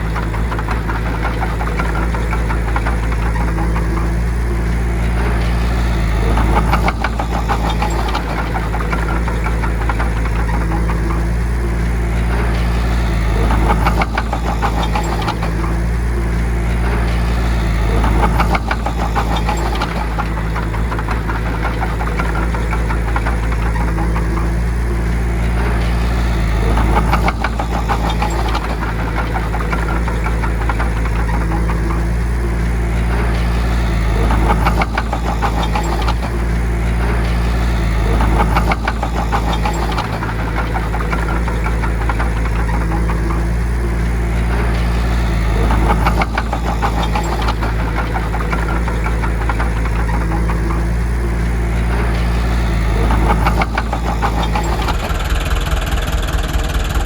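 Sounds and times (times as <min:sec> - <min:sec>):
bulldozer diesel engine running: 0:00.0 - 0:57.0
rapid clatter: 0:00.0 - 0:57.0.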